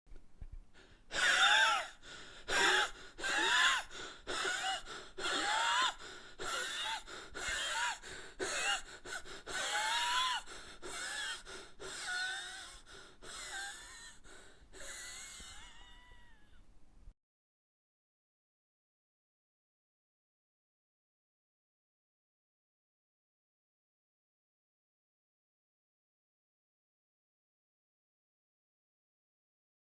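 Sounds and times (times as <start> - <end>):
person gasping for air: 0.7 - 16.3.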